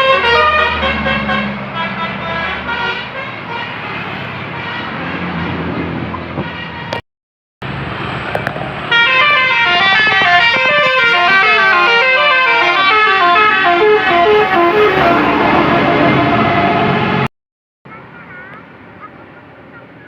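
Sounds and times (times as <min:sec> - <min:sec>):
multi-tone bus horn melody: 0:00.0 - 0:05.7, 0:06.3 - 0:07.0, 0:08.9 - 0:17.3.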